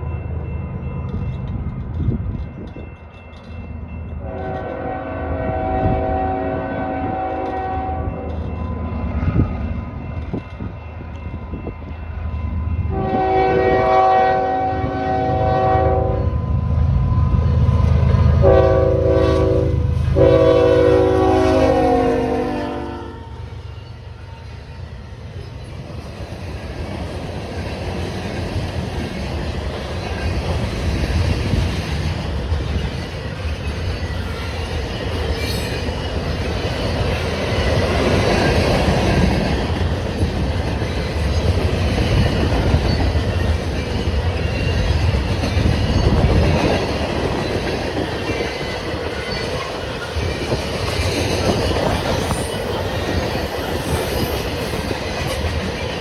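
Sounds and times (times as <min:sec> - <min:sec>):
train wheels clattering over rails: 0:25.4 - 0:56.0.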